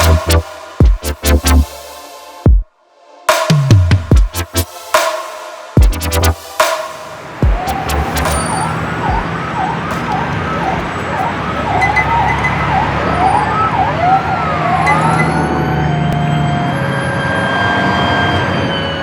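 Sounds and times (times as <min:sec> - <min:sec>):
siren-like wails: 0:07.2 - 0:19.0.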